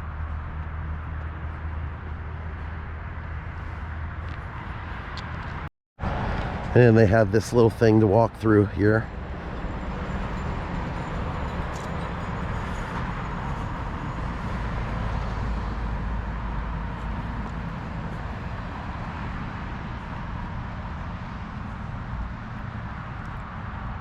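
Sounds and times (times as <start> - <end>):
road traffic rumble: 0.0 - 24.0.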